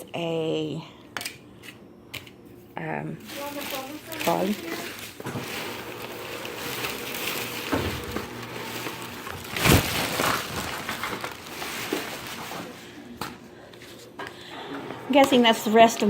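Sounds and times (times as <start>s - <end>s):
paper rustling and crinkling: 3.2s - 13.1s.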